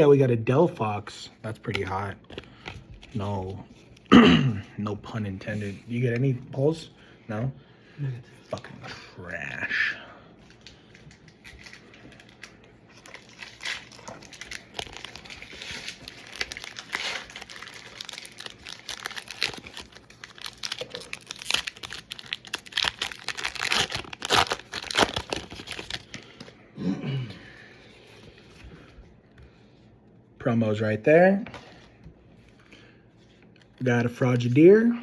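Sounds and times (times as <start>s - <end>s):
foil wrapper tearing and crinkling: 11.4s - 26.3s.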